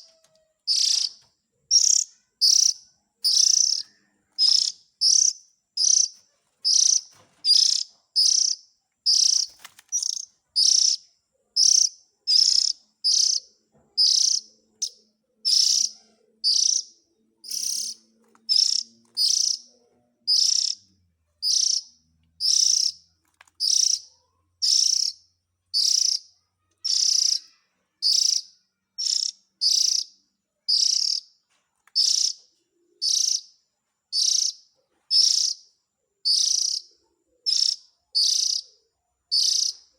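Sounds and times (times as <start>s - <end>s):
bird giving harsh calls: 0.0s - 11.0s.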